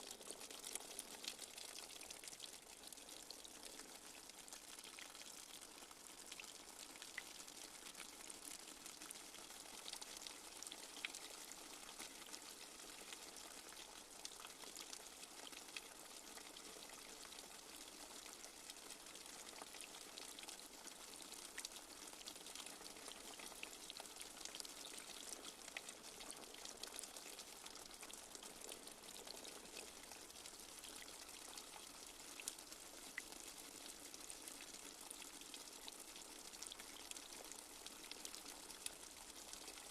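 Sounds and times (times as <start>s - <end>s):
light rain falling: 0.0s - 39.9s.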